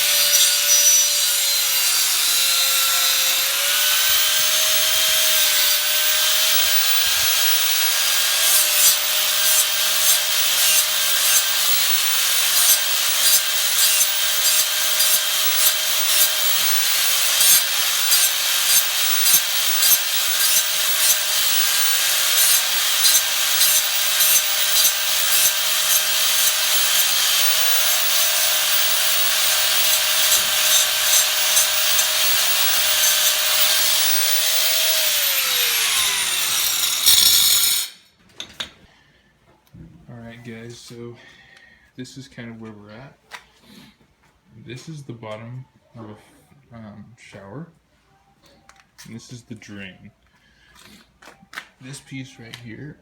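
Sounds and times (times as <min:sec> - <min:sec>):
hand saw rasping strokes: 0:00.0 - 0:38.0.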